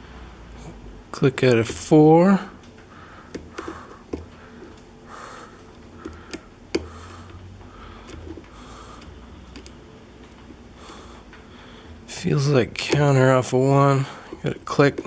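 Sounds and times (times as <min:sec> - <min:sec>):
soft nasal breathing: 0:02.9 - 0:09.8, 0:10.6 - 0:12.1
lock pick clicking: 0:09.5 - 0:09.8.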